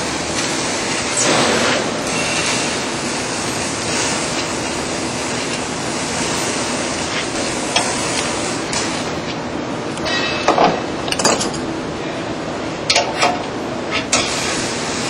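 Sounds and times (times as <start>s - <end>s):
loud rushing noise: 1.2s - 5.2s.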